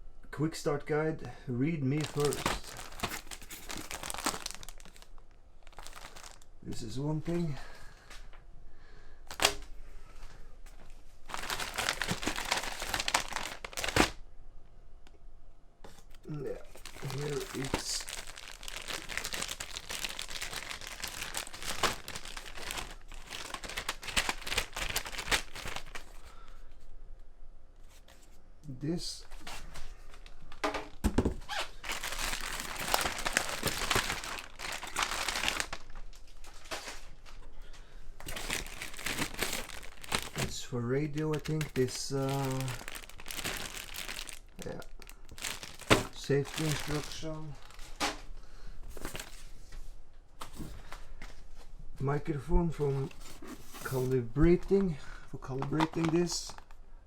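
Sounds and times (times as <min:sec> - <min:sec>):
packaging crinkling and rustling: 0:01.9 - 0:08.2, 0:09.3 - 0:09.7, 0:10.7 - 0:14.2, 0:15.9 - 0:26.4, 0:29.2 - 0:49.8, 0:53.0 - 0:56.8.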